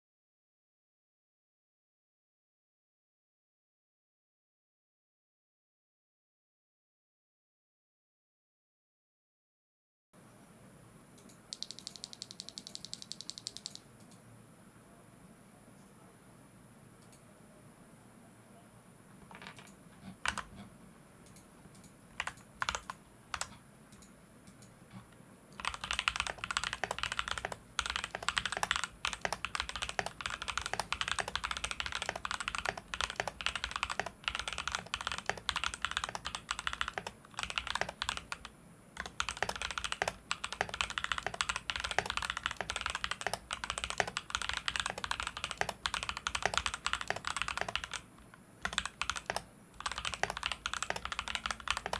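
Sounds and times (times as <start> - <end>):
mechanical keyboard typing: 11.5 - 13.8, 19.3 - 20.5, 21.3 - 24.7, 25.6 - 51.9.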